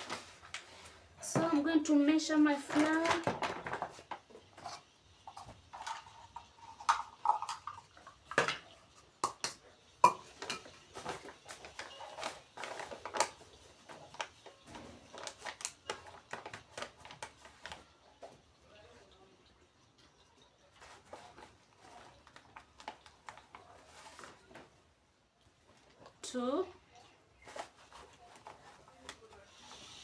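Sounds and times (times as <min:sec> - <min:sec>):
utensils clinking against bowls: 0:02.7 - 0:13.5.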